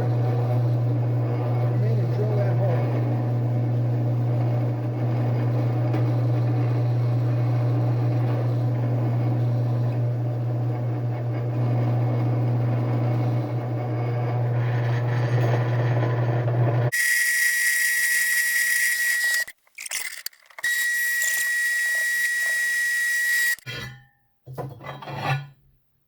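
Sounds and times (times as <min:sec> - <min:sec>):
drill press drilling steel: 0:11.7 - 0:23.7.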